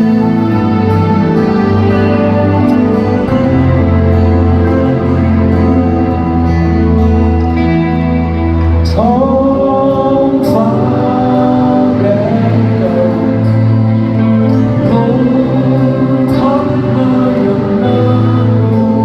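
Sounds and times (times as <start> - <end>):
rock band music: 0.0 - 19.0
person singing long notes: 8.5 - 19.0.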